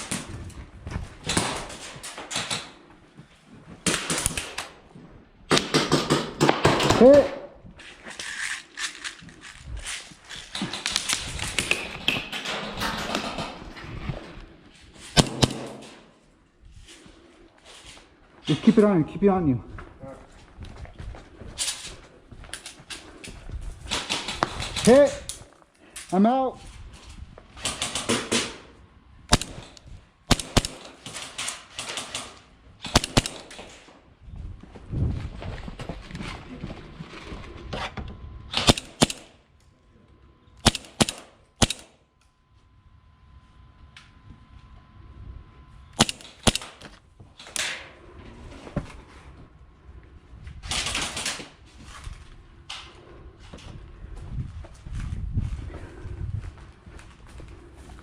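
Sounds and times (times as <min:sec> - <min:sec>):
airsoft guns firing sharp cracks: 0:01.3 - 0:02.8, 0:03.8 - 0:04.7, 0:05.5 - 0:07.2, 0:15.2 - 0:16.0, 0:23.9 - 0:25.1, 0:27.6 - 0:28.6, 0:29.3 - 0:33.8, 0:38.5 - 0:39.4, 0:40.6 - 0:42.0, 0:46.0 - 0:46.9
airsoft gun shots: 0:15.2 - 0:16.0, 0:29.3 - 0:31.2, 0:32.8 - 0:33.6, 0:38.6 - 0:39.4, 0:40.6 - 0:42.0, 0:46.0 - 0:46.8.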